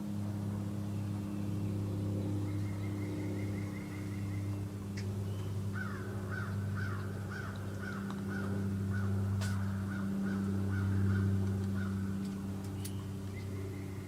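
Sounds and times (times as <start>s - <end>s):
crow cawing: 5.7s - 12.1s.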